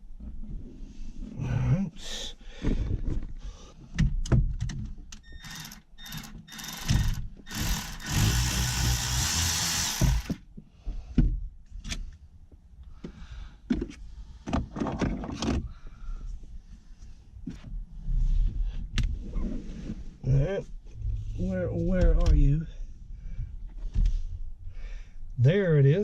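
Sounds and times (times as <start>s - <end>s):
hand tools clicking and rattling: 5.4s - 10.4s
dense rasping noise: 5.5s - 10.4s.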